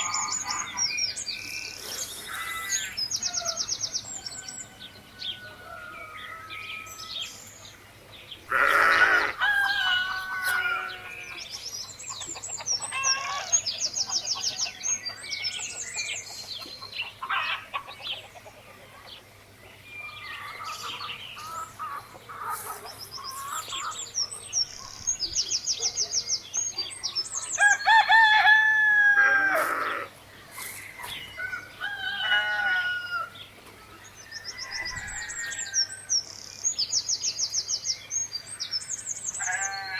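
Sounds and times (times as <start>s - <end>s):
small birds chirping: 0.0s - 9.4s, 10.4s - 28.1s, 29.3s - 32.5s
rooster crowing: 3.3s - 7.3s, 8.5s - 11.4s, 27.6s - 30.1s, 31.3s - 33.4s, 34.2s - 36.0s, 39.4s - 39.9s
chickens clucking: 8.7s - 25.0s.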